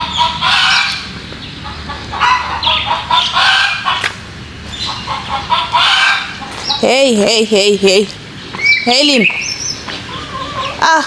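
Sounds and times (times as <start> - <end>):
chickens clucking loudly: 0.0 - 7.4, 9.7 - 11.0.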